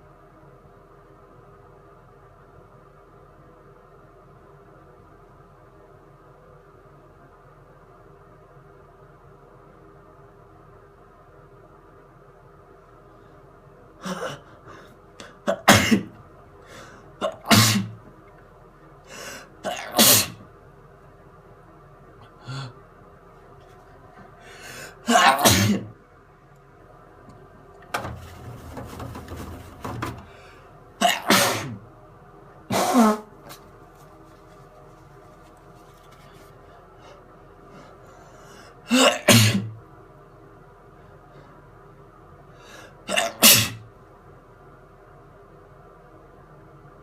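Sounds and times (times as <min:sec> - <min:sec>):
steady background hum: 0:00.0 - 0:47.0
person sneezing: 0:15.2 - 0:16.2, 0:17.2 - 0:18.0, 0:19.6 - 0:20.4, 0:24.8 - 0:25.9, 0:31.0 - 0:31.8, 0:32.7 - 0:33.4, 0:38.9 - 0:39.7, 0:43.1 - 0:43.8.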